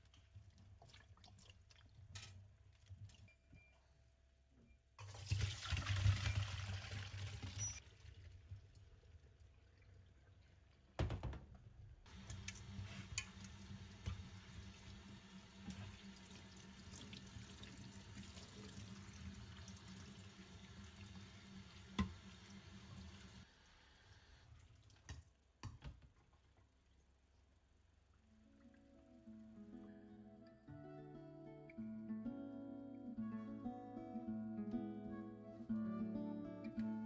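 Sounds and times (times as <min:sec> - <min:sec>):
knock: 0:11.0 - 0:11.5
tap running water into sink: 0:12.1 - 0:23.4.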